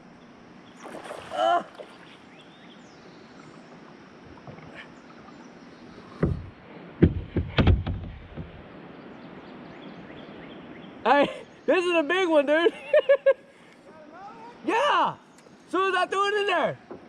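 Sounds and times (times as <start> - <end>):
water splashing: 0.8 - 2.4.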